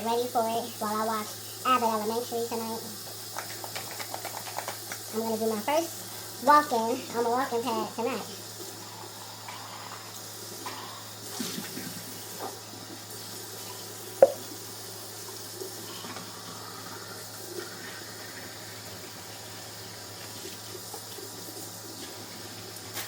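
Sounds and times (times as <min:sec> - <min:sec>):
tap water running into sink: 0:00.0 - 0:23.0.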